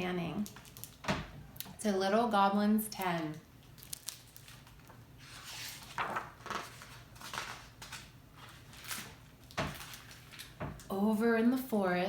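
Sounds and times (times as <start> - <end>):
book pages rustling: 3.8 - 10.6.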